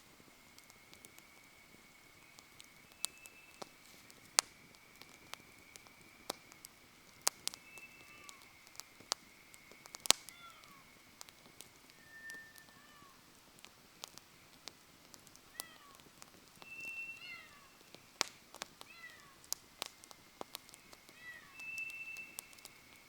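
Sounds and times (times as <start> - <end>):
campfire crackling and popping: 0.0 - 23.0
faint high whistle: 2.3 - 6.6, 7.4 - 11.0, 11.9 - 13.2, 16.6 - 18.0, 20.8 - 23.0.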